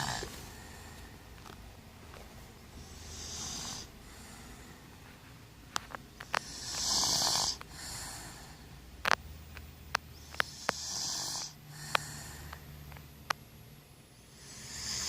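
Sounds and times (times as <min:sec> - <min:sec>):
person snoring: 0:00.0 - 0:01.0, 0:02.8 - 0:04.7, 0:06.3 - 0:08.7, 0:10.3 - 0:12.6, 0:14.3 - 0:15.0.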